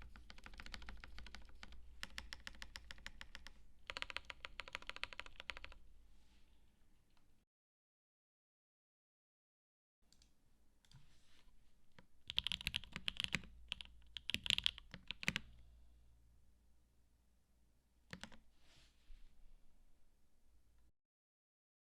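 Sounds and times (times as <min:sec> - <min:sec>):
mechanical keyboard typing: 0:00.0 - 0:05.8, 0:12.3 - 0:15.6, 0:18.1 - 0:18.4.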